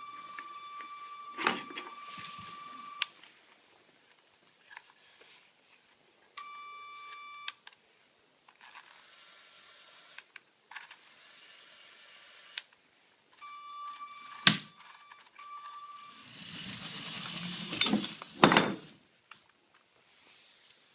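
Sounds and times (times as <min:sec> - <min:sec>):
small electric motors whining: 0:15.6 - 0:18.2.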